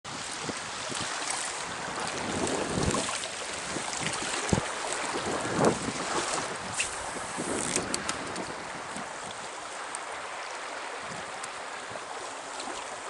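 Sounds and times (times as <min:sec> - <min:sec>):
wind buffeting microphone: 0:00.1 - 0:12.2
stream water flowing: 0:00.1 - 0:13.0
knocks and splashes: 0:00.9 - 0:09.4.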